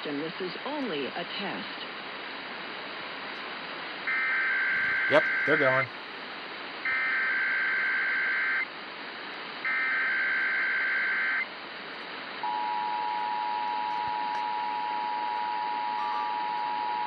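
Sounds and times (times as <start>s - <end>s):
radio hiss: 0.0s - 12.5s
two-tone attention signal: 4.1s - 5.8s, 12.5s - 17.0s
data bursts: 4.1s - 5.9s.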